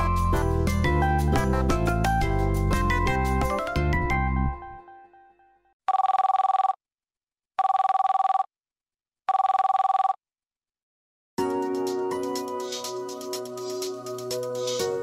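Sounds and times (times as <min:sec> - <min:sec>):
phone ringtone trilling: 0:05.9 - 0:06.8, 0:07.6 - 0:08.5, 0:09.3 - 0:10.2
ringtone tune: 0:05.9 - 0:06.8, 0:07.6 - 0:08.5, 0:09.3 - 0:10.2.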